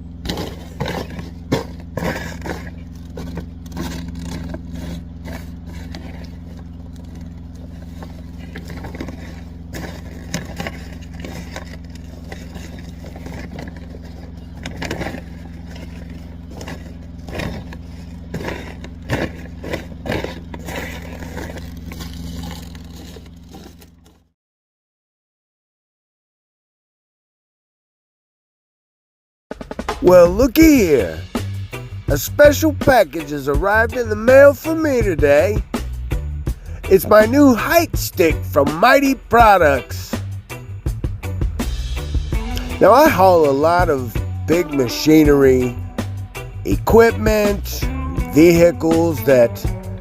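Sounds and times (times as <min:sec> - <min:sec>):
truck engine idling: 0:00.0 - 0:24.2, 0:29.6 - 0:50.0
frozen tarp crackling and scraping: 0:00.2 - 0:24.2, 0:41.6 - 0:44.9.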